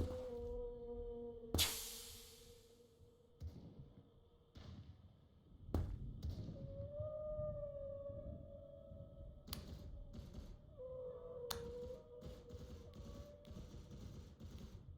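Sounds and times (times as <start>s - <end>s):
whale-like tonal moan: 0.0s - 2.8s, 10.6s - 13.3s.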